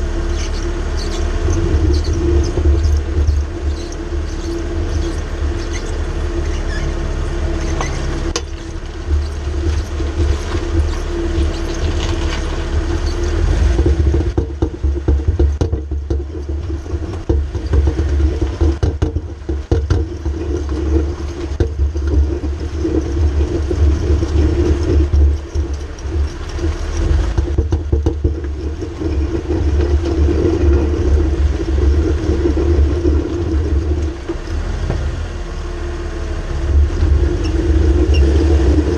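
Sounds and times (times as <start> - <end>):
carrier bearing hum: 0.0 - 35.5
car driving rumble: 0.0 - 38.9.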